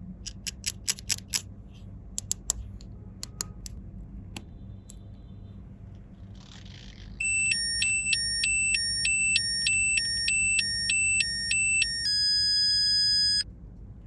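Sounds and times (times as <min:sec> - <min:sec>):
electronic two-tone beeping: 0:07.2 - 0:13.4
steady high beep: 0:07.2 - 0:13.4.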